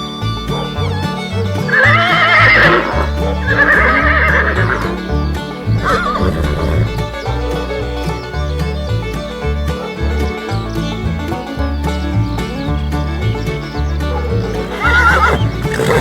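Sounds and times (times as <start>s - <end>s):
background music: 0.0s - 16.0s
horse whinnying: 1.7s - 5.1s, 5.7s - 7.2s, 14.5s - 16.0s.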